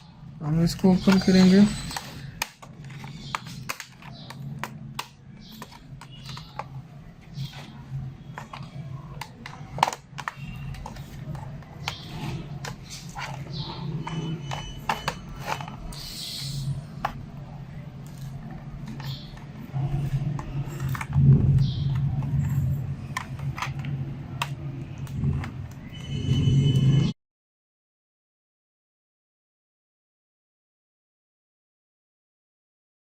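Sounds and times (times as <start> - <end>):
plastic scraping: 0.6 - 27.1
plastic clips snapping: 0.7 - 6.7.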